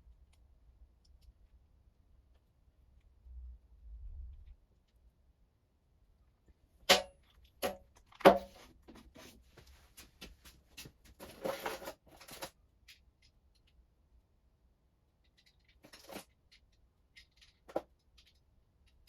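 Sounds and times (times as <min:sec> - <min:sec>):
tools and metal parts rattling: 0:11.2 - 0:13.0, 0:15.2 - 0:19.0.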